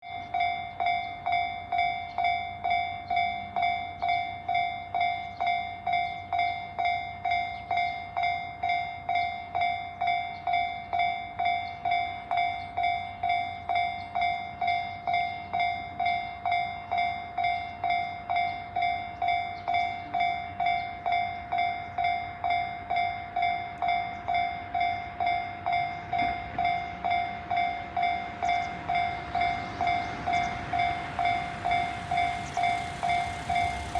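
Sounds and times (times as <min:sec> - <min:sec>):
level-crossing warning bell ringing: 0:00.0 - 0:33.9
rushing noise: 0:27.6 - 0:33.9.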